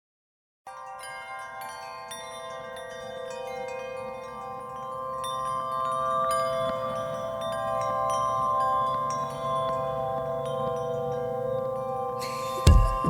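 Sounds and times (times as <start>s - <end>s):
ringing chime tones: 1.0s - 13.0s.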